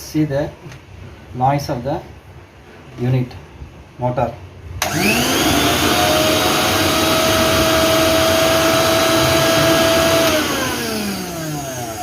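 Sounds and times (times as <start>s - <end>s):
mixer grinder motor whining: 4.8s - 12.0s.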